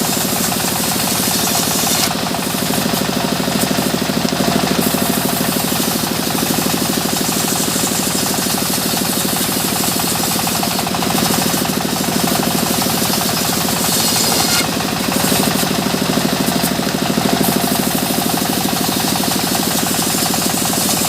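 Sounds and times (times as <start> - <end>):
sawmill machinery running: 0.0 - 21.0.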